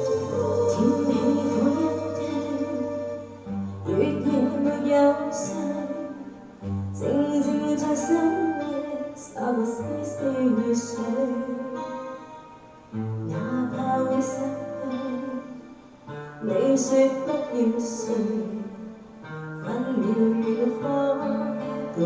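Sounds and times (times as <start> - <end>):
person singing: 0.0 - 6.4
soft instrumental backing: 0.0 - 22.0.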